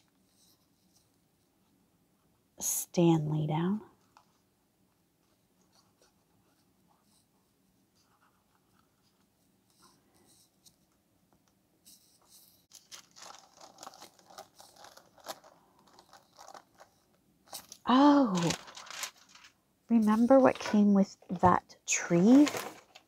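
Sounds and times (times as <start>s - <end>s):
paper rustling and scratching: 11.8s - 21.4s, 22.0s - 23.0s.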